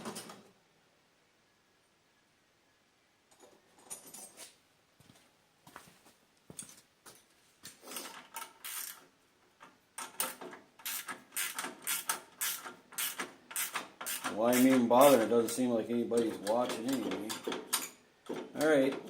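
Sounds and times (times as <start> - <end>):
metallic clicks and rattles: 16.2 - 19.0.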